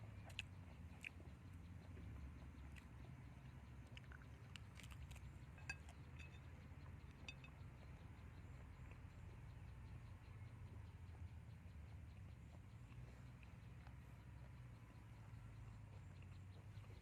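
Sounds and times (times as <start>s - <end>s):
faint clinks of tableware: 5.6s - 6.6s, 7.2s - 7.6s.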